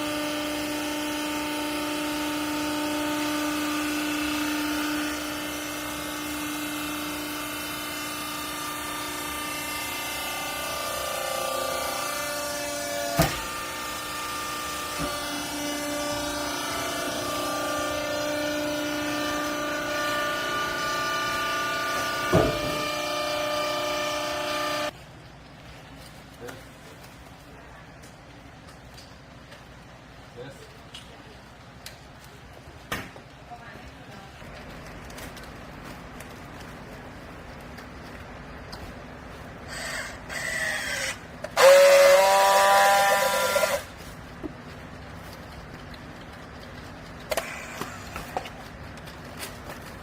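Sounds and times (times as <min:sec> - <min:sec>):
motor and pump whining: 0:00.0 - 0:25.0, 0:35.2 - 0:50.0.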